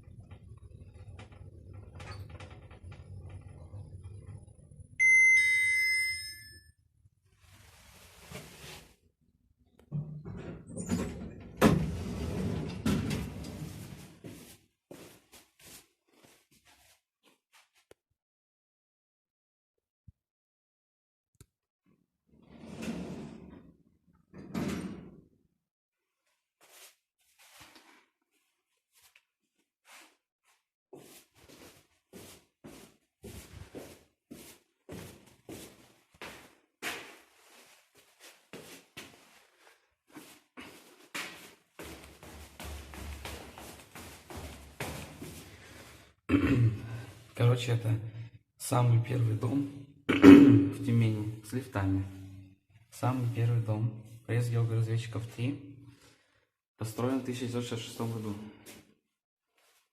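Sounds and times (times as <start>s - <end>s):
two-tone lift arrival chime: 5.0s - 6.7s
lift doors sliding: 10.7s - 14.0s, 22.4s - 23.6s.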